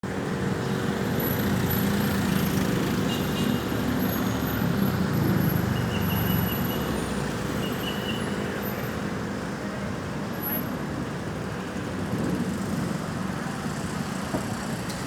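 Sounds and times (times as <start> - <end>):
heavy vehicles passing: 0.1 - 7.6.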